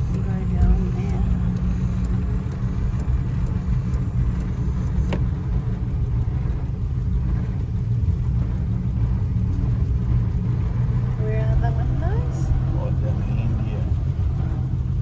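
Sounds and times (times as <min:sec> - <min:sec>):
car engine and road rumble: 0:00.0 - 0:15.0.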